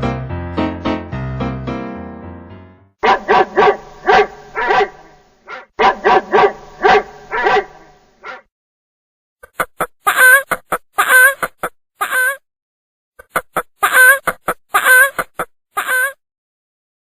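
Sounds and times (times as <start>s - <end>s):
piano tune: 0.0s - 3.0s
dog barking: 3.0s - 8.5s.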